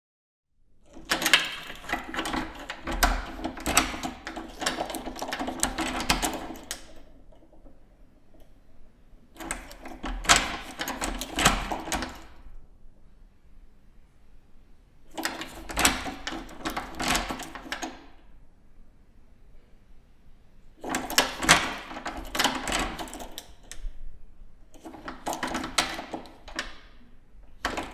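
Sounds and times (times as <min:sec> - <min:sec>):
keys rattling: 0:00.9 - 0:08.5, 0:09.4 - 0:12.4, 0:15.1 - 0:18.2, 0:20.8 - 0:23.9, 0:24.7 - 0:27.0, 0:27.6 - 0:27.9
door lock clicking: 0:00.9 - 0:08.7, 0:09.4 - 0:12.5, 0:15.1 - 0:18.3, 0:20.8 - 0:24.0, 0:24.7 - 0:27.9.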